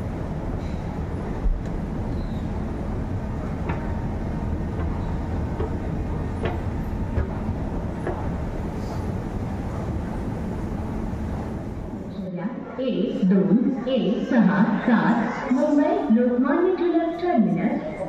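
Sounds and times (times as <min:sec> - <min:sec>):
train rumbling: 0:00.0 - 0:13.6.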